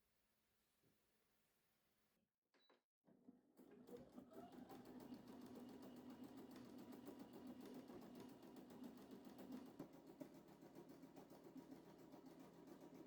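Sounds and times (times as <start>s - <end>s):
sewing machine stitching: 3.6s - 9.8s.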